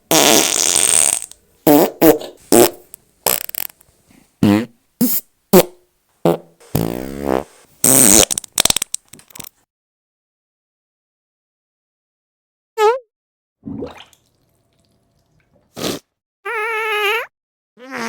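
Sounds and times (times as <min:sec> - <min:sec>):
buzzy fart sound effects: 0:00.1 - 0:03.8, 0:04.4 - 0:08.8, 0:17.8 - 0:18.0.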